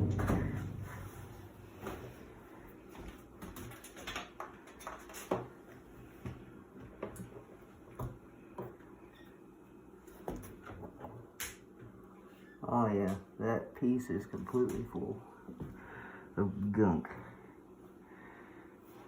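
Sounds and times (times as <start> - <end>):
low steady background noise: 0.0 - 19.0.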